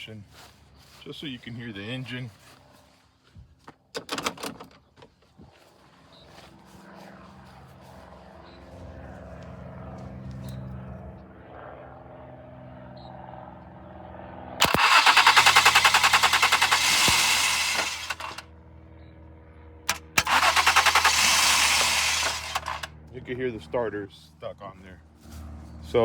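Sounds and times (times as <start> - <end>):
fast rattling grind: 14.6 - 18.4, 19.9 - 22.9
starter motor whirring: 14.6 - 18.4, 19.9 - 22.9.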